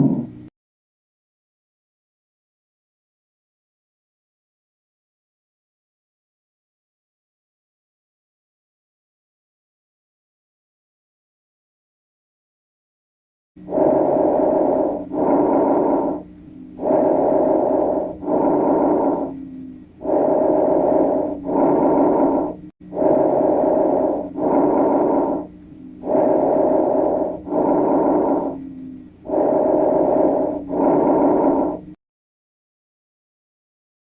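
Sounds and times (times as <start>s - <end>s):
low steady hum: 0.0s - 0.5s, 13.6s - 32.0s
person breathing: 13.6s - 32.0s.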